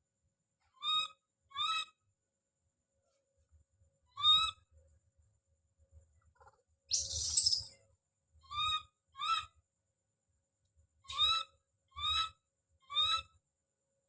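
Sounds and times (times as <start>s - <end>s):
baby monkey calling: 6.9s - 7.8s
monkey high-pitched scream: 6.9s - 7.8s.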